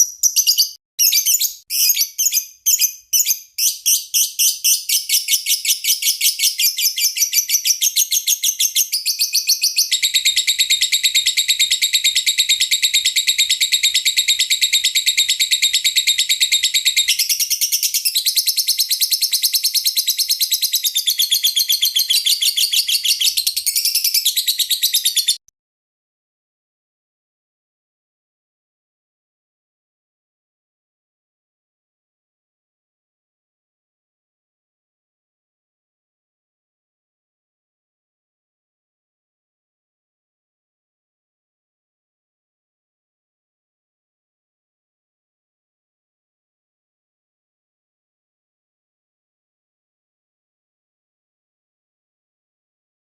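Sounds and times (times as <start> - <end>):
lovebird chirping and trilling: 0.0 - 25.4.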